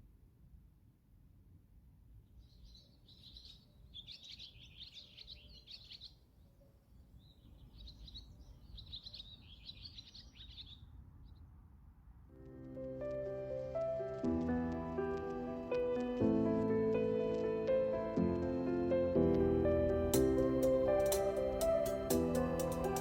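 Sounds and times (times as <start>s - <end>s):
small birds chirping: 2.2s - 11.5s
faint low rumble: 10.6s - 23.0s.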